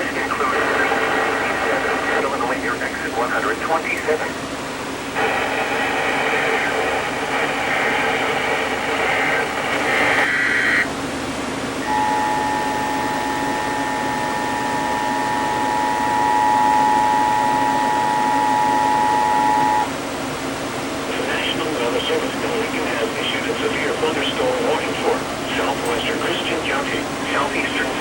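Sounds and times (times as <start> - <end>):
two-tone alert signal: 11.8 - 19.9.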